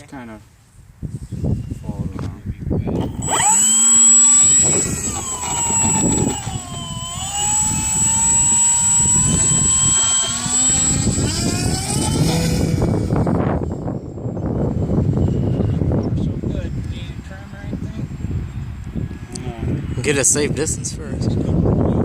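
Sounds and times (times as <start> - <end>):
high thin tone: 3.0 - 13.1
model aircraft motor whining: 3.0 - 13.9.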